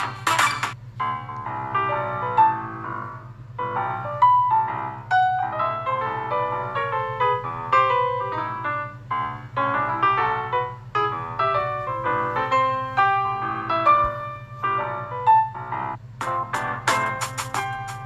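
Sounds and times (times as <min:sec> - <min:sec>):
phone ringtone keyboard tune: 0:16.2 - 0:18.0.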